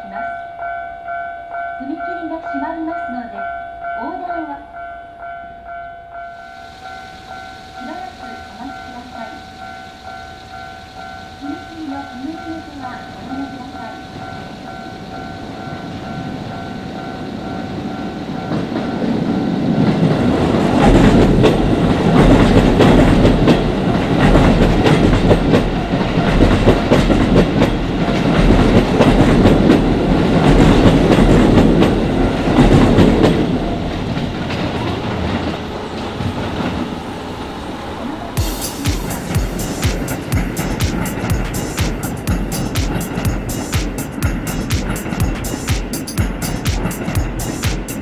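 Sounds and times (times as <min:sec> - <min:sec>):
crossing warning bell: 0:00.0 - 0:34.8, 0:38.0 - 0:48.0
train wheels clattering: 0:12.8 - 0:36.9, 0:38.4 - 0:48.0.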